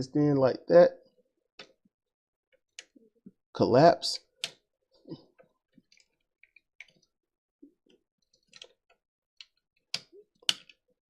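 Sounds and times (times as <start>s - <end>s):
plastic toy parts clicking: 8.4s - 10.8s.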